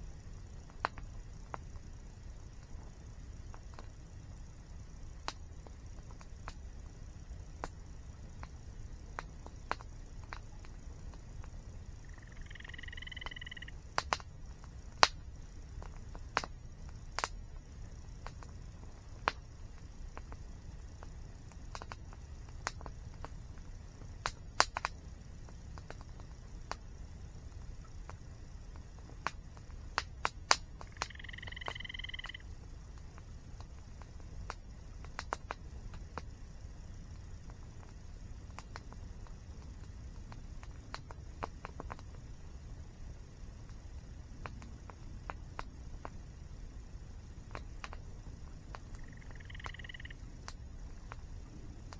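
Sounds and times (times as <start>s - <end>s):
campfire crackling and popping: 0.1s - 51.9s
bird call: 12.0s - 13.8s, 30.9s - 32.4s, 49.0s - 50.2s.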